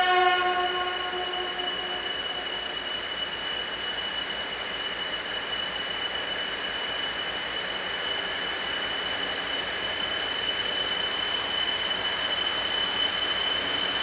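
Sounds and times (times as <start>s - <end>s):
train rolling noise: 0.0s - 3.2s
train wheels squealing: 0.0s - 14.0s.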